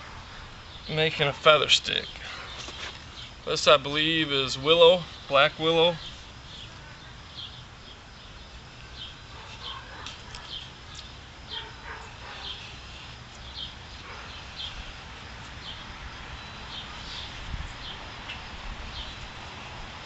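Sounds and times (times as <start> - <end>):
bird chirping: 0.3 - 19.3
knife scraping a stick: 11.9 - 14.9.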